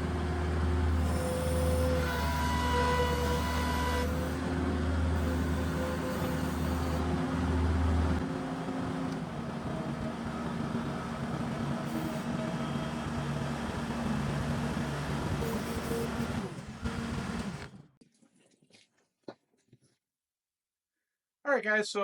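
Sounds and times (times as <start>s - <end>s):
skid steer engine running: 0.0s - 17.9s.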